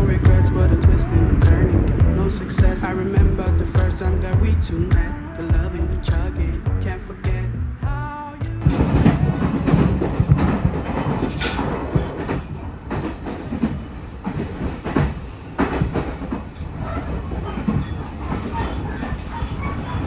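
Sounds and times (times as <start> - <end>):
train rumbling: 0.0 - 20.0
wheels clattering on rails: 8.4 - 20.0.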